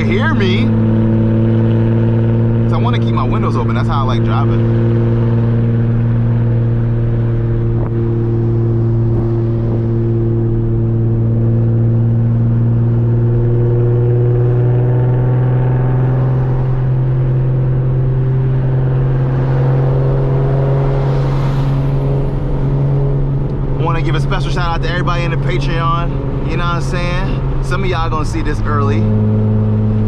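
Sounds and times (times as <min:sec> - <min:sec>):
car engine and exhaust: 0:00.0 - 0:30.0.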